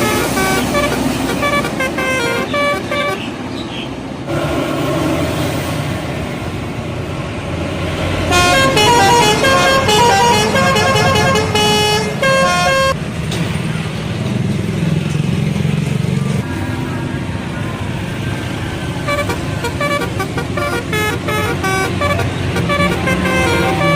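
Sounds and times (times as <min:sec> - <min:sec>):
bus horn melody: 0:00.0 - 0:03.4, 0:08.3 - 0:13.0, 0:19.0 - 0:23.9
engine and traffic rumble: 0:00.0 - 0:23.9.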